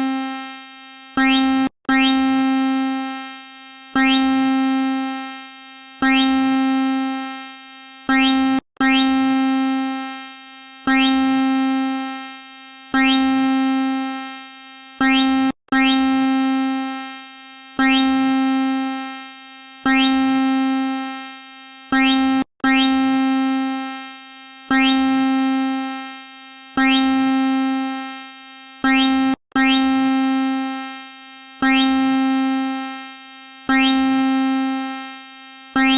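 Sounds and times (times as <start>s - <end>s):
electronic alarm tone: 1.2s - 2.9s, 4.0s - 4.8s, 6.0s - 7.1s, 8.1s - 9.5s, 10.9s - 11.7s, 13.0s - 14.1s, 15.0s - 16.4s, 17.8s - 18.6s, 19.9s - 21.0s, 21.9s - 23.4s, 24.7s - 25.4s, 26.8s - 27.8s, 28.8s - 30.5s, 31.6s - 32.4s, 33.7s - 34.8s.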